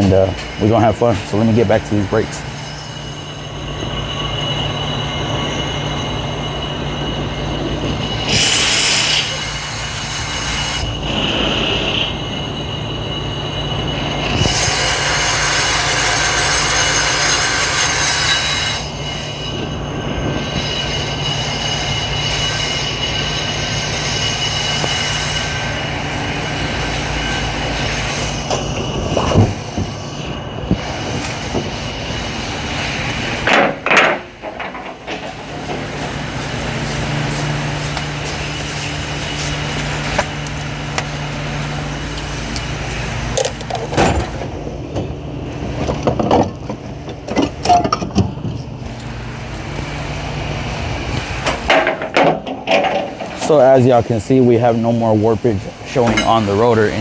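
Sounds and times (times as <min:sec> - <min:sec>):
harsh scraping hiss: 0:00.0 - 0:33.5
brake lathe motor hum: 0:00.0 - 0:53.5
high metallic whine: 0:00.0 - 0:57.0.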